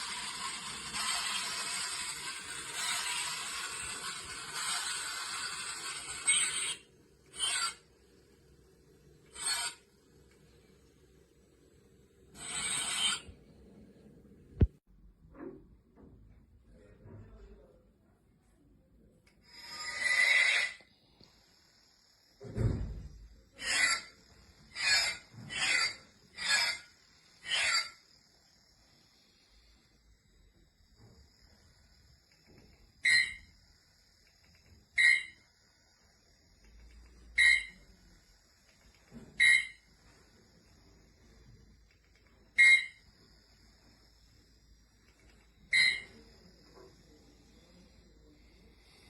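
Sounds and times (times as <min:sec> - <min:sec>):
toy lightsaber hiss: 0:00.0 - 0:08.3, 0:19.4 - 0:49.0.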